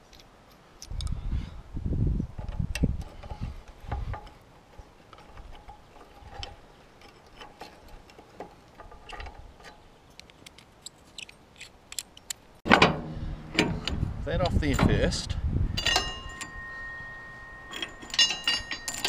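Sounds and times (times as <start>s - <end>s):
heavy knocks and handling thumps: 12.7s - 15.0s
hand tools tapping on metal: 15.8s - 19.0s.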